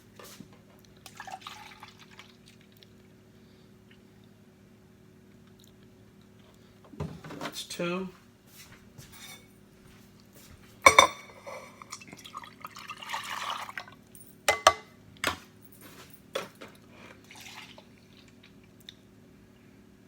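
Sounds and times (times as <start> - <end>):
milk pouring: 1.1 - 2.8, 11.2 - 14.0, 17.1 - 18.7
kitchenware clinks and knocks: 10.8 - 11.8, 14.5 - 15.4, 16.4 - 16.8.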